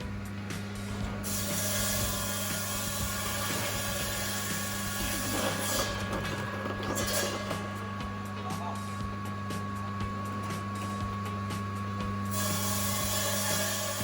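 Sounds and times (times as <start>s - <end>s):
steady motor hum: 0.0s - 14.0s
blades grinding through ice: 1.2s - 7.9s.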